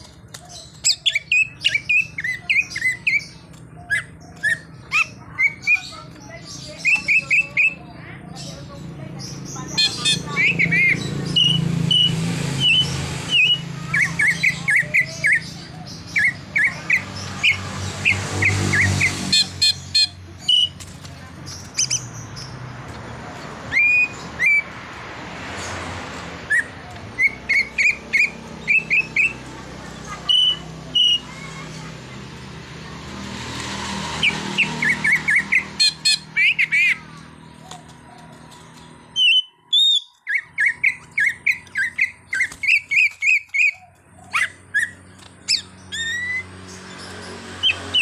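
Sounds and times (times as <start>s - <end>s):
bird singing chirps and whistles: 23.7s - 24.6s, 39.2s - 46.5s.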